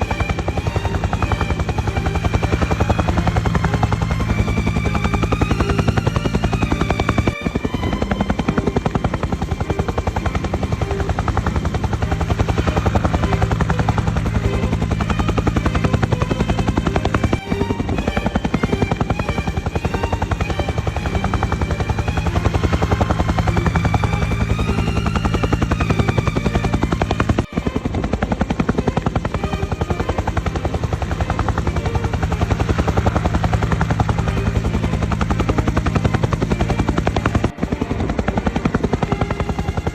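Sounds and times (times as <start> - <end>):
background music: 0.0 - 27.9
helicopter rotor chopping: 0.0 - 39.9.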